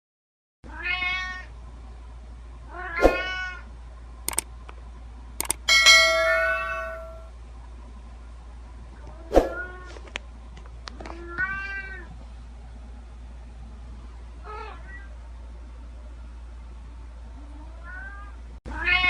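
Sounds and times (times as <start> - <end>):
sharp clicks: 4.3 - 4.5, 5.4 - 5.7
bell-like ringing tone: 5.4 - 7.3
cat meowing: 17.8 - 19.0.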